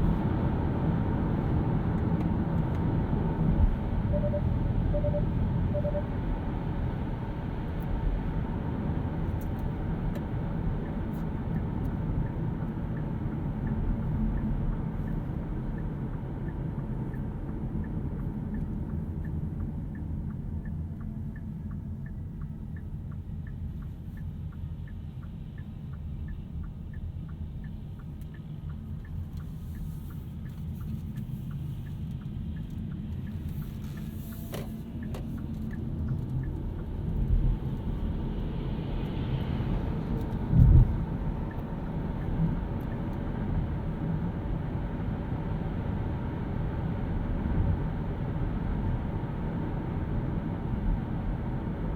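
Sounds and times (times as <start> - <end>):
road and tyre rumble: 0.0 - 51.9
light ticking: 9.4 - 38.1.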